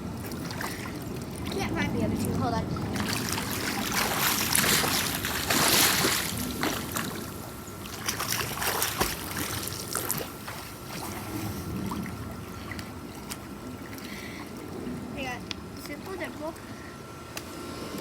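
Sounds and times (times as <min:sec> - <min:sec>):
pool water splashing: 0:00.0 - 0:18.0.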